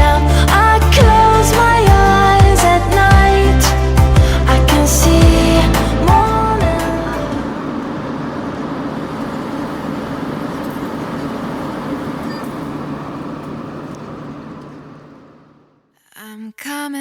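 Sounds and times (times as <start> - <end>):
airliner engine drone: 0.3 - 15.8
low hum: 4.1 - 15.9.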